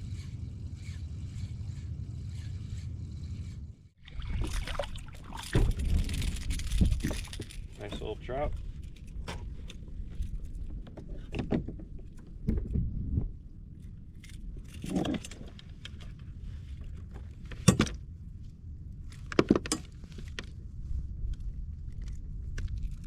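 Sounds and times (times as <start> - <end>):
wind on microphone: 4.2 - 15.6
fishing tackle jingling and clinking: 5.3 - 8.2.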